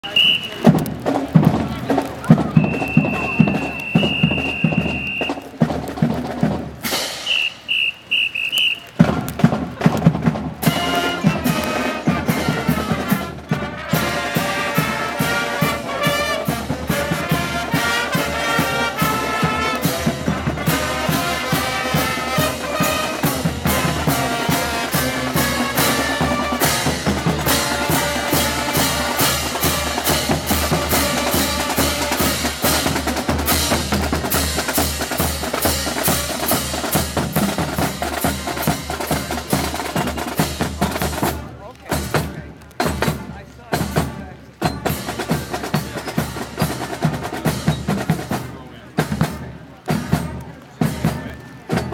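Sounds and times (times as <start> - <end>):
marching band playing: 0.0 - 51.9
snare and bass drums: 0.0 - 51.9.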